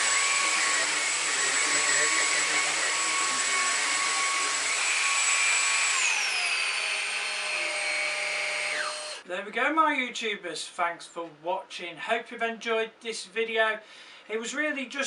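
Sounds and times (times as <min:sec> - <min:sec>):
vacuum cleaner running: 0:00.0 - 0:09.2.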